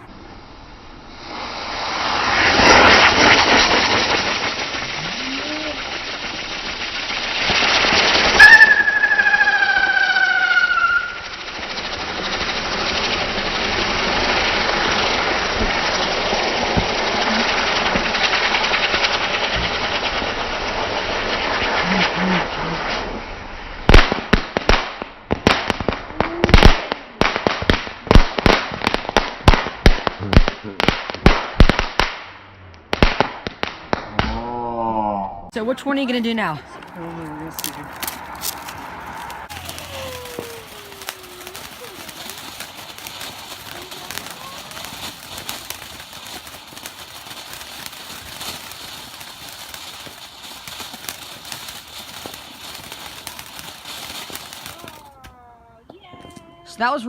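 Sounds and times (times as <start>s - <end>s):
fireworks hissing burn: 0.0s - 32.4s, 35.6s - 57.0s
firework falling whistle: 1.1s - 23.2s, 37.5s - 55.1s
fireworks cracks and bangs: 1.1s - 34.4s, 35.6s - 57.0s.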